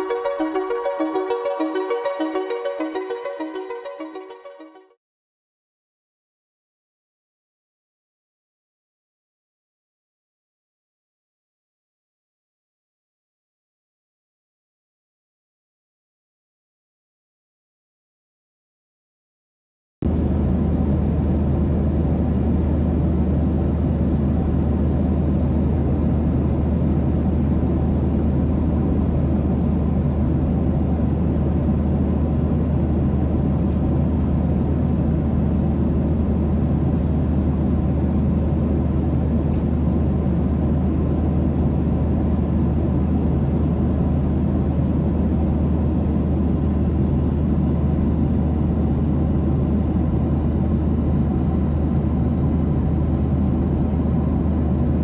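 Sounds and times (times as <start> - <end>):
airliner cabin drone: 0.0 - 4.8, 20.0 - 55.0.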